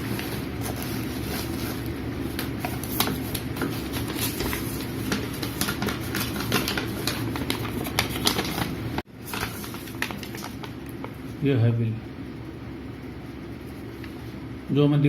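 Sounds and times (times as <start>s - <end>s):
steady low hum: 0.0s - 15.0s
packaging clicking: 2.4s - 8.7s.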